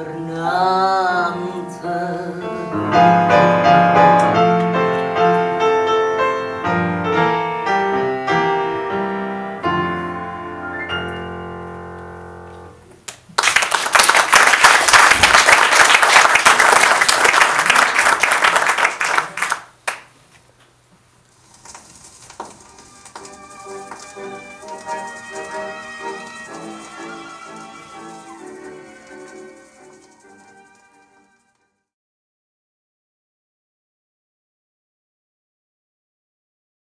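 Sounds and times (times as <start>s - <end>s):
piano playing: 0.0s - 13.0s, 22.5s - 31.6s
audience applause: 13.1s - 20.1s, 23.1s - 30.9s.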